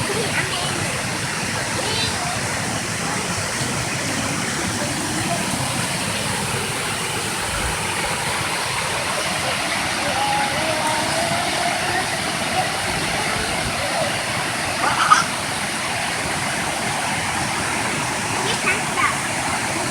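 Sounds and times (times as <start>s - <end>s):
waterfall rushing: 0.0s - 19.9s
faint voice-like sound: 9.0s - 15.5s.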